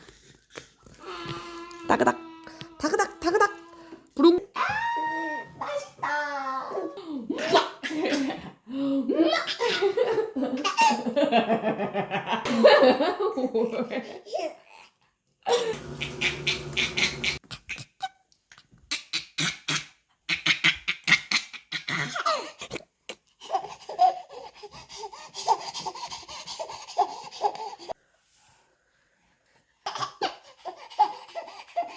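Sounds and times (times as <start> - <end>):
baby laughing: 9.1 - 11.2, 15.5 - 18.2, 29.8 - 31.9.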